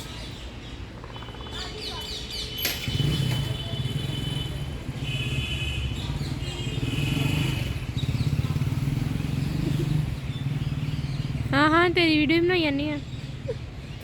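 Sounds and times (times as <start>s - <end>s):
bird chirps: 0.0s - 3.5s
engine humming steadily: 2.6s - 14.0s.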